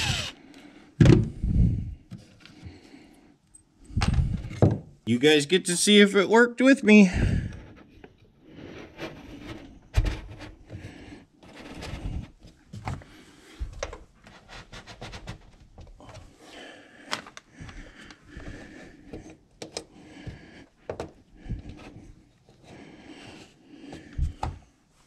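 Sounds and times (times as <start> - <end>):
plastic scraping and knocking in hole: 7.5 - 10.8.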